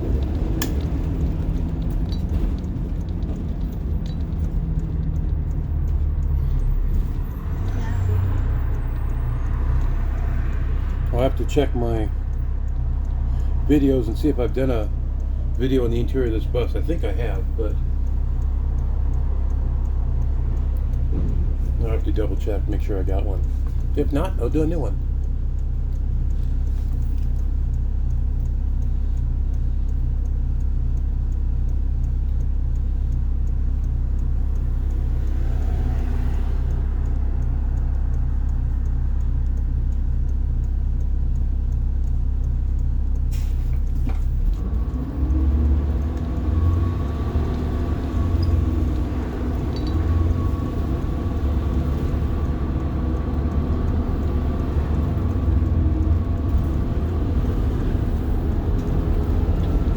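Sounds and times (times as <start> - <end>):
bus diesel engine: 0.0 - 59.9.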